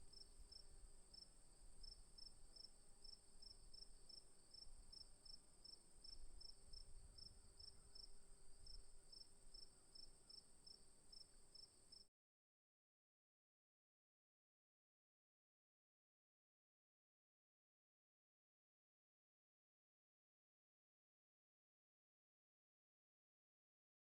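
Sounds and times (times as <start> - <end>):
crickets chirping rhythmically: 0.0 - 12.1.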